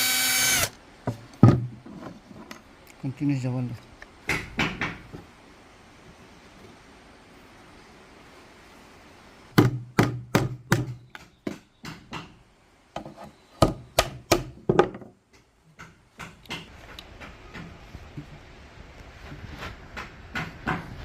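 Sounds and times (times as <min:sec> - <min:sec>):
tool knocking on wood: 0:04.3 - 0:05.2, 0:19.9 - 0:21.0.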